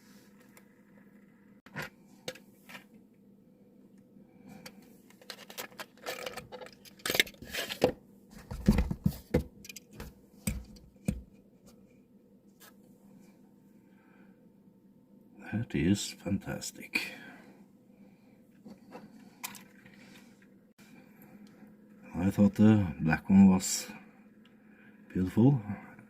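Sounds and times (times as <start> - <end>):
packaging rustling and scraping: 5.1 - 9.3.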